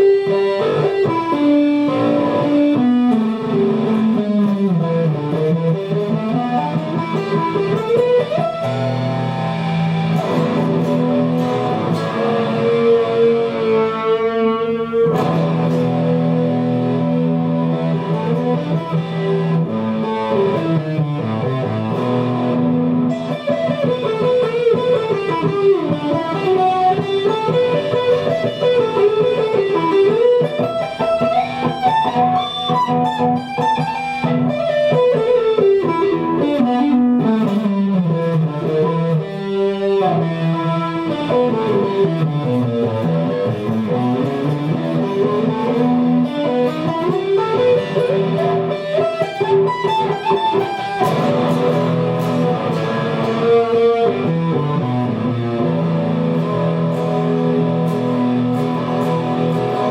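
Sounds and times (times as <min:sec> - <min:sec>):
guitar music: 0:00.0 - 0:59.9.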